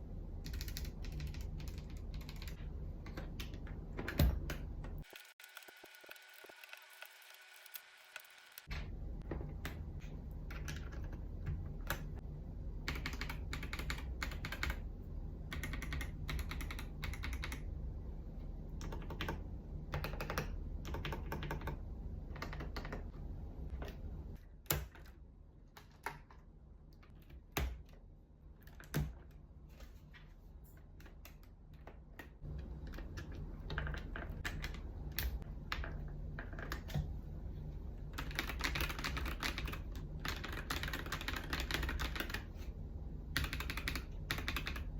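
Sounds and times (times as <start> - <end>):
typing on mechanical keyboard: 0.4 - 7.8, 10.4 - 12.2, 12.8 - 14.9, 15.5 - 17.7, 18.8 - 23.1, 31.0 - 36.9, 38.1 - 42.5, 43.3 - 44.9.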